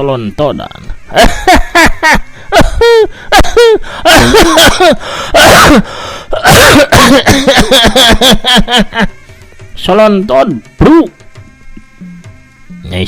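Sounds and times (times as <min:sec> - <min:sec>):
man's strained cries: 0:01.0 - 0:09.3
harsh hissing breath blasts: 0:05.0 - 0:06.4.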